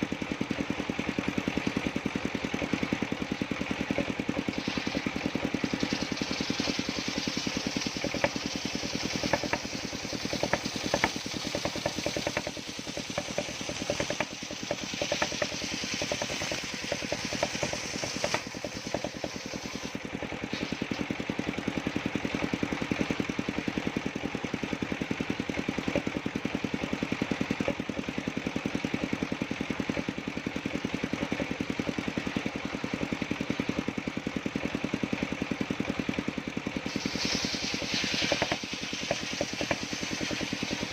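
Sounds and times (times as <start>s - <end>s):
sharp ticks and knocks: 0.0s - 20.1s, 25.0s - 36.3s, 36.9s - 40.9s
sawmill engine running: 0.0s - 40.9s.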